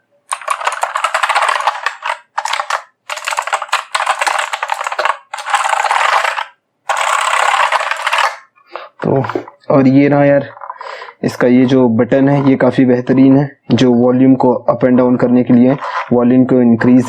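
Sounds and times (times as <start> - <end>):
clicky mechanical keyboard typing: 0.3 - 8.4.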